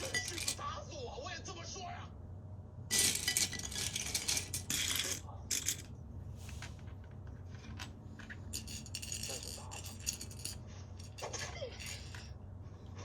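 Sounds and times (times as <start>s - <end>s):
plastic bricks clattering: 0.0s - 0.6s, 2.9s - 5.9s, 7.5s - 12.3s.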